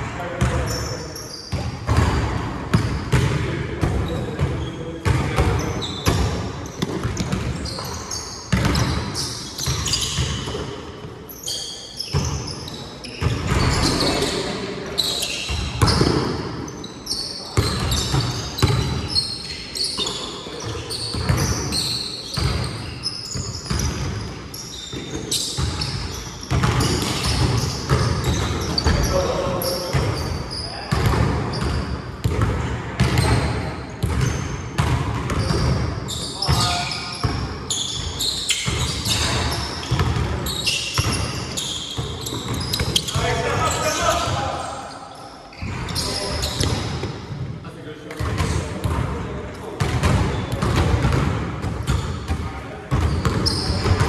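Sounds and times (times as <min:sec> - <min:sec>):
players' voices: 0:00.0 - 0:34.4, 0:35.3 - 0:40.0, 0:40.6 - 0:54.0
basketball bouncing on floor: 0:30.9 - 0:35.8.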